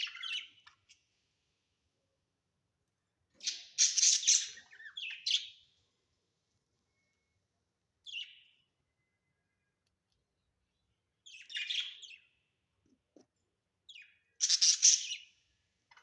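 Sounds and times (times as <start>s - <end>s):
budgerigars chirping: 3.4s - 5.5s, 14.0s - 15.2s.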